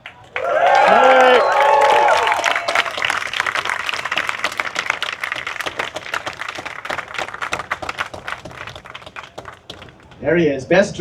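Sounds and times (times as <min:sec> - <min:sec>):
crowd applauding: 0:00.0 - 0:10.3.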